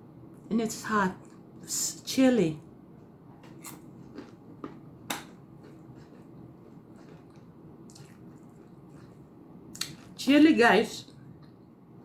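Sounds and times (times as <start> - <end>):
chewing noises: 3.4 - 10.2.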